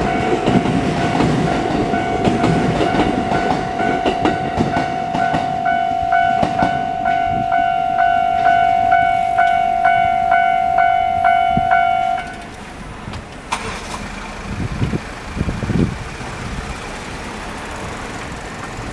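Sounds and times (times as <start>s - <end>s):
train wheels knocking: 0.0s - 6.9s
level crossing warning bell: 0.0s - 12.4s.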